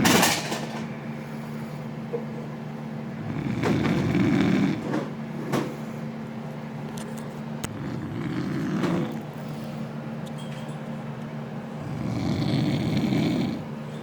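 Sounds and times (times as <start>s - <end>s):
steady low hum: 0.0s - 14.0s
man snoring loudly: 3.2s - 4.8s, 7.7s - 9.2s, 11.8s - 13.7s.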